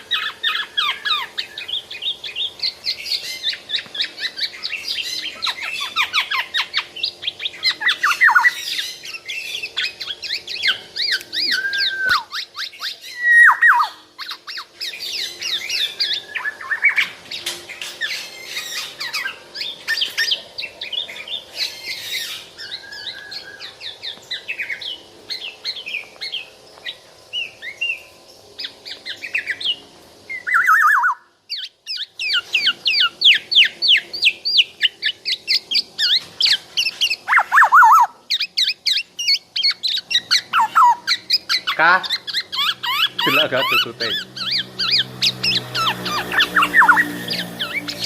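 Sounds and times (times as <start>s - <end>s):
bird chirping: 0.0s - 48.0s
bird falling whistles: 11.4s - 12.4s.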